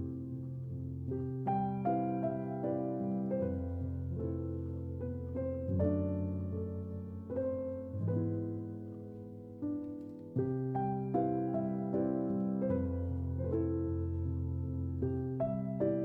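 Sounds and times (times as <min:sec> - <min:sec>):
soft piano music: 0:00.0 - 0:16.0.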